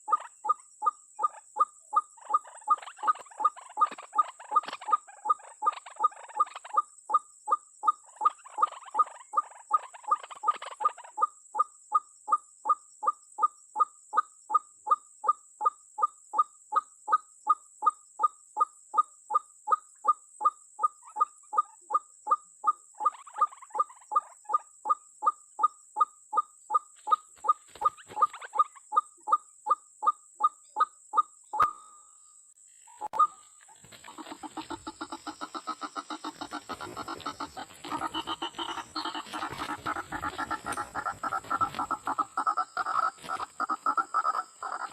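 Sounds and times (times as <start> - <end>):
waterhen calling: 32.9 - 44.9.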